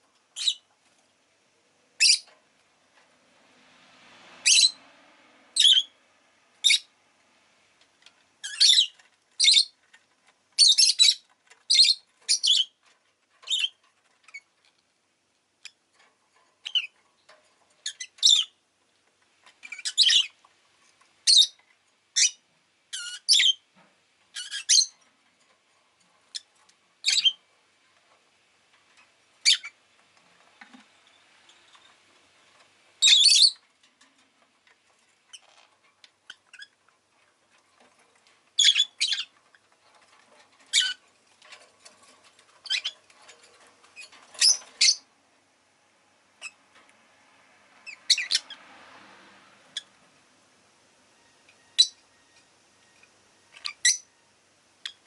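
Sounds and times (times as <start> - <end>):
lovebird chirping: 0.4 - 0.7, 2.0 - 2.3, 4.4 - 4.8, 5.6 - 6.0, 6.6 - 6.9, 8.4 - 9.8, 10.6 - 12.8, 17.8 - 18.6, 19.6 - 20.4, 21.2 - 21.6, 22.2 - 23.6, 24.4 - 25.0, 26.3 - 27.4, 29.4 - 29.8, 33.0 - 33.6, 38.6 - 39.4, 40.7 - 41.0, 42.6 - 43.0, 44.0 - 45.1, 47.8 - 48.6, 51.6 - 54.1.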